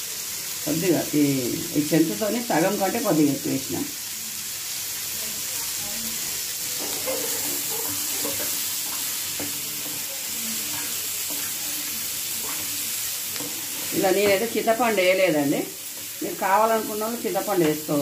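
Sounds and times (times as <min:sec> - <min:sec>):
vegetables sizzling in oil: 0:00.0 - 0:18.0
spoon scraping pan: 0:06.6 - 0:18.0.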